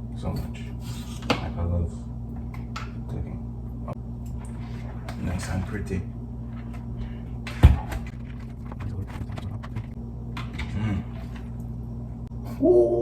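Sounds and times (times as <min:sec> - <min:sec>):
electrical hum: 0:00.0 - 0:13.0.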